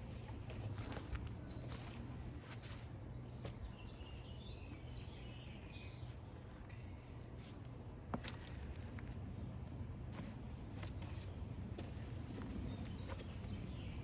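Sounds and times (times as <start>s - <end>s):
low background hum: 0.0s - 14.0s
faint bird chirping: 0.8s - 8.7s, 11.0s - 14.0s.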